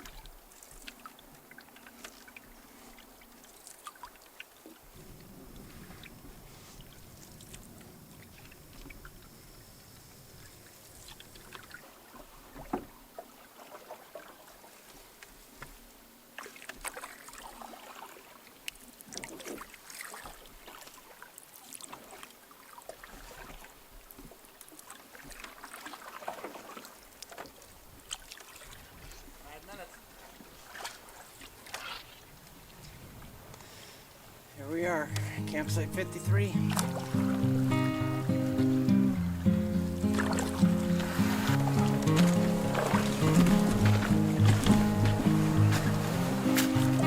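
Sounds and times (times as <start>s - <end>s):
paddle strokes and water splashes: 0.0s - 47.0s
knocks on canoe: 40.2s - 47.0s.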